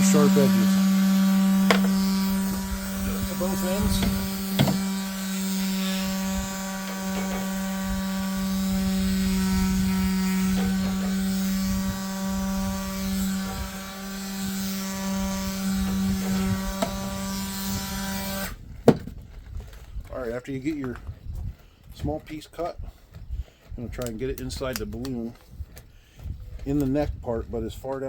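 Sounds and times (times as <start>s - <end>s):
power tool grinding metal: 0.0s - 19.0s.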